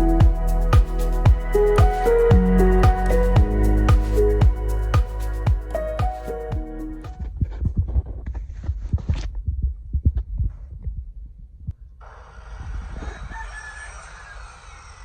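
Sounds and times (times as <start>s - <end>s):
dull low thumps: 0.0s - 11.8s
rooster crowing: 12.0s - 15.0s.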